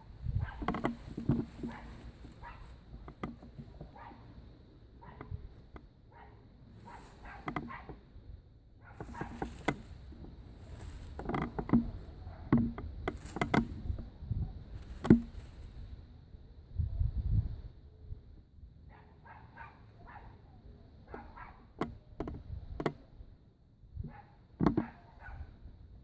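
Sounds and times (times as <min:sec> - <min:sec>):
rustling and scratching in grass: 0:00.0 - 0:08.2, 0:08.8 - 0:17.6.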